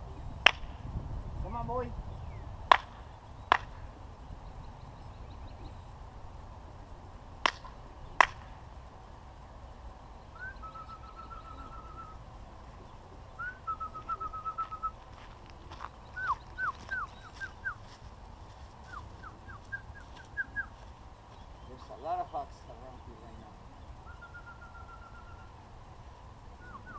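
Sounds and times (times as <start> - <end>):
songbird singing: 0.0 - 26.9
sharp knocks: 2.7 - 3.8, 7.4 - 8.6.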